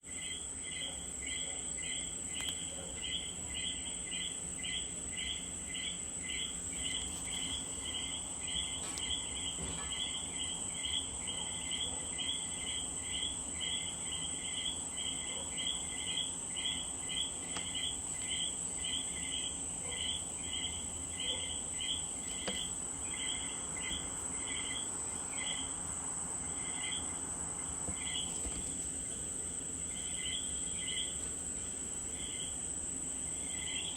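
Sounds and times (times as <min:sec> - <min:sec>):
steady high-pitched buzz: 0:00.0 - 0:33.9
frogs calling: 0:00.1 - 0:28.6, 0:29.8 - 0:31.2, 0:32.1 - 0:33.9.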